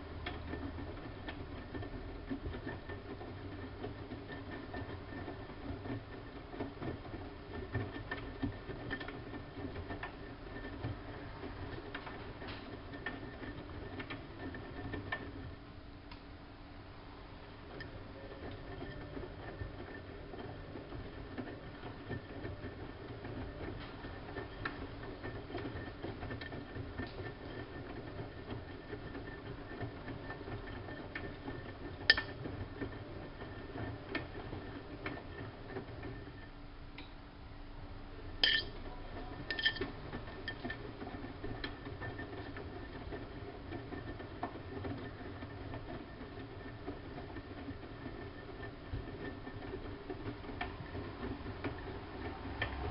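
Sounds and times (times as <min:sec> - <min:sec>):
washing machine drum churning: 0:38.3 - 0:52.9.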